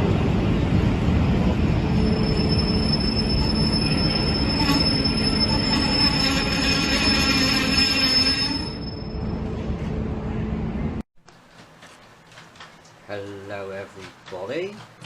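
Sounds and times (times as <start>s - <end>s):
thin high whine: 1.9s - 9.7s.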